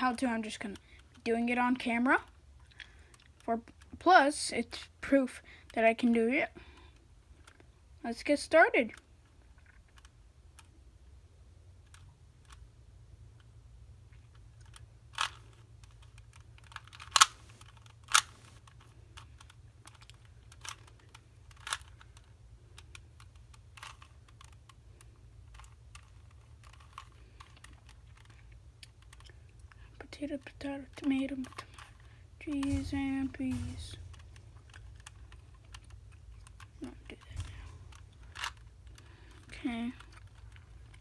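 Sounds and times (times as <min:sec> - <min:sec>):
puzzle cube clicking: 0:14.2 - 0:29.9, 0:30.9 - 0:41.0.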